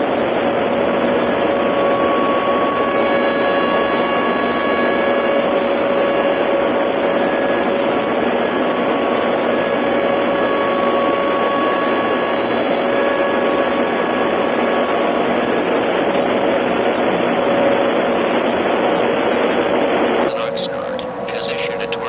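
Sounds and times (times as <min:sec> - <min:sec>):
radio static hiss: 0:20.2 - 0:22.0.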